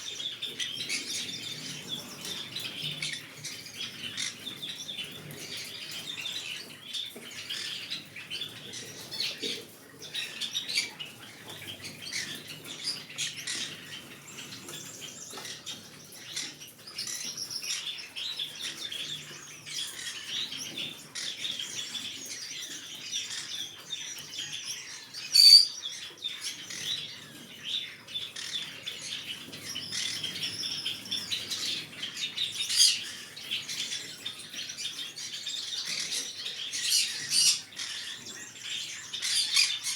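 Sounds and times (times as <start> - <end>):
parrot chattering and chirping: 25.0 - 25.8, 39.2 - 39.9
parrot squawking: 25.3 - 25.8.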